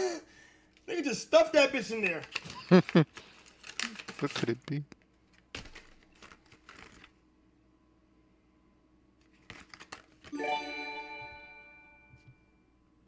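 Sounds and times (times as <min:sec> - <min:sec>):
package wrapping rustle: 0:02.2 - 0:07.2, 0:09.2 - 0:10.4
sustained musical chord: 0:10.4 - 0:12.6.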